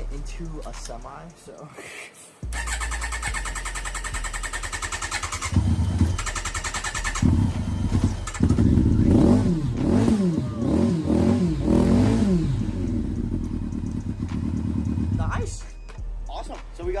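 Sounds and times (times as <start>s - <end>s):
motorcycle engine revving: 2.4s - 15.6s
motorcycle electric starter cranking: 2.5s - 9.4s.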